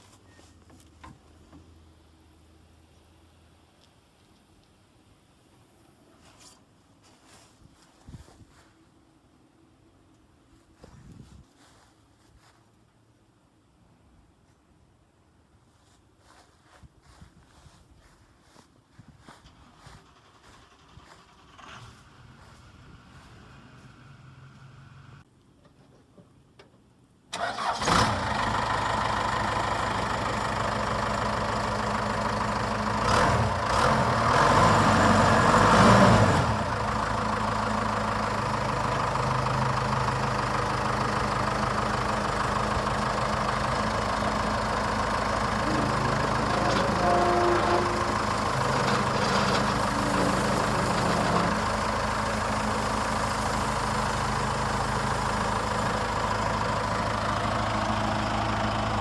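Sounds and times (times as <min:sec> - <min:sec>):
diesel engine idling: 0:27.4 - 0:59.0.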